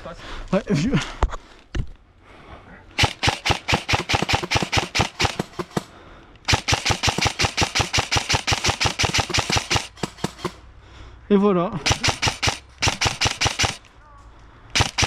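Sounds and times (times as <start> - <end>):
airsoft rifle firing bursts: 3.0 - 10.7, 11.8 - 13.9, 14.7 - 15.0.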